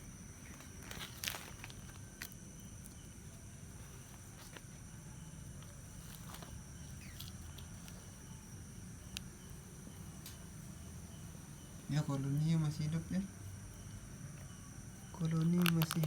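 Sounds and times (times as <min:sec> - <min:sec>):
high-pitched insect chirring: 0:04.8 - 0:16.0.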